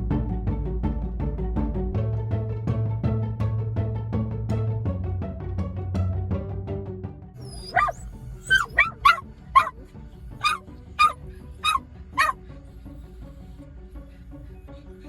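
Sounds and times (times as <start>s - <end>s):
background music: 0.0s - 15.0s
dog barking: 7.5s - 9.8s, 10.4s - 12.4s.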